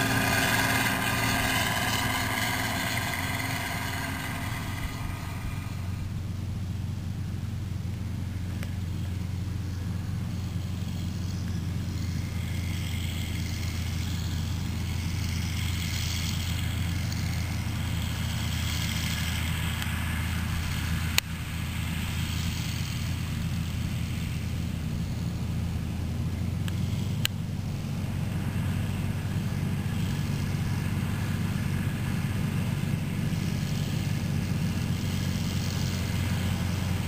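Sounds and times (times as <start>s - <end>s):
machinery hiss: 0.0s - 6.4s
combine harvester engine hum: 0.0s - 37.0s.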